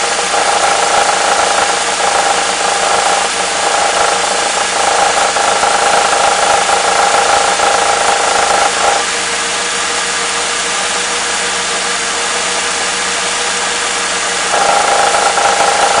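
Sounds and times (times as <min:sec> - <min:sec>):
car engine idling with knock: 0:00.0 - 0:09.1, 0:14.2 - 0:16.0
high whine: 0:00.0 - 0:09.1, 0:14.4 - 0:16.0.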